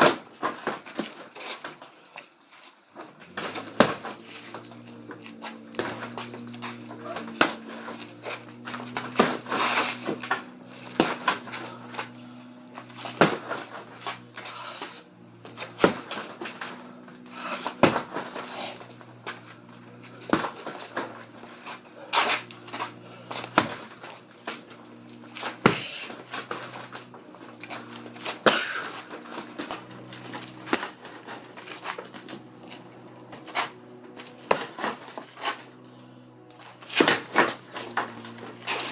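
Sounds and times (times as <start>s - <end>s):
metal chain jingling: 0.0s - 38.9s
steady low hum: 3.0s - 38.9s
punching bag thuds: 3.4s - 4.2s, 7.1s - 7.9s, 8.8s - 11.6s, 13.0s - 13.8s, 15.8s - 16.6s, 17.5s - 18.5s, 20.3s - 21.2s, 25.4s - 26.6s.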